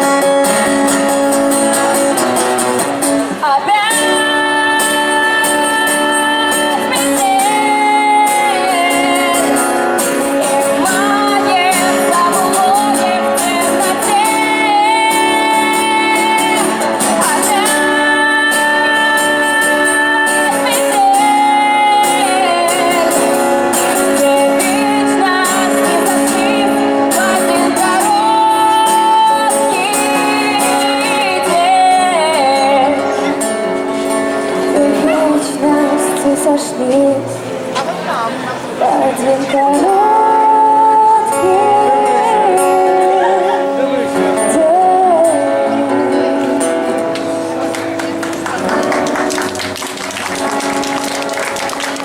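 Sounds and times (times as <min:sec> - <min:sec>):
person singing: 0:00.0 - 0:37.5, 0:38.1 - 0:48.0
acoustic guitar: 0:00.0 - 0:52.0.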